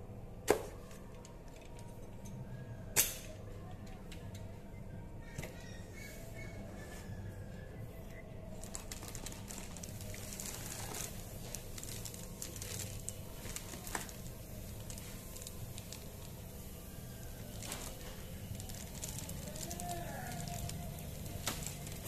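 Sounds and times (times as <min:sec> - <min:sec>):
steady low hum: 0:00.0 - 0:22.0
packaging clicks and crinkles: 0:08.4 - 0:22.0.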